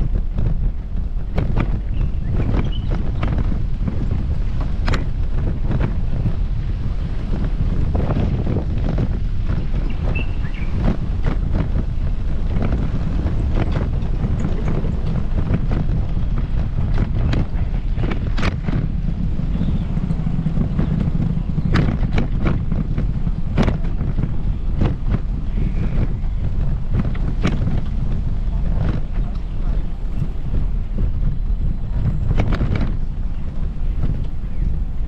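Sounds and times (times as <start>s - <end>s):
low wind rumble on microphone: 0.0s - 35.0s.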